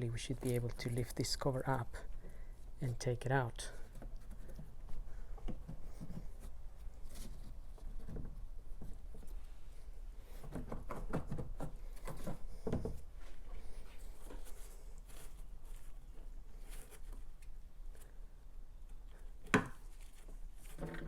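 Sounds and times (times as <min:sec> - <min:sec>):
plastic knocks and clicks: 0:10.4 - 0:13.0.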